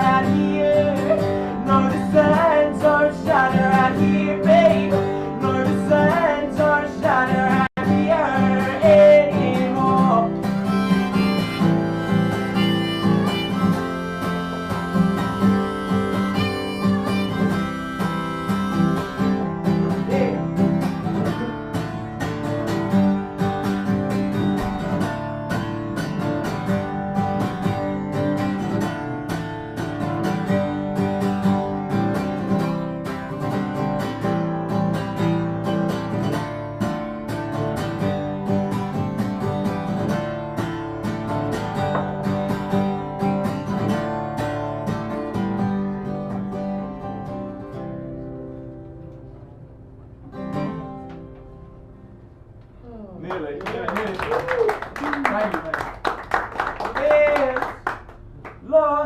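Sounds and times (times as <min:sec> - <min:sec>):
bending melody line: 0:00.0 - 0:23.2
acoustic guitar music: 0:00.0 - 0:54.0.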